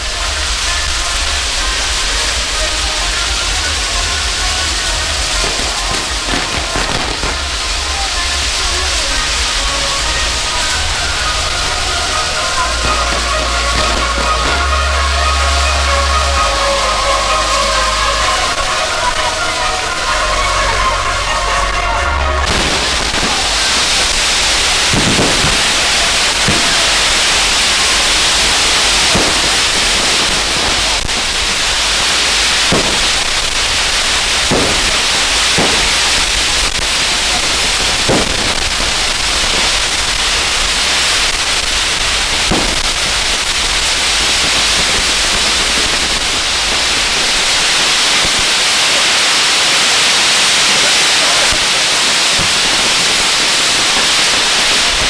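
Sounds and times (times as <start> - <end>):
fireworks fountains hissing: 0.0 - 55.0
faint firework pops: 4.7 - 15.0, 22.5 - 48.7.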